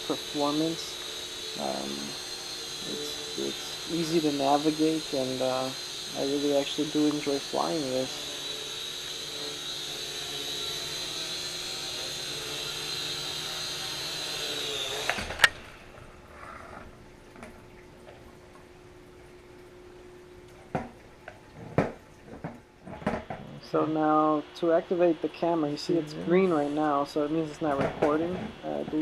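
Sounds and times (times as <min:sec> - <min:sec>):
quadcopter motors whining: 0:00.0 - 0:16.9, 0:23.0 - 0:29.0.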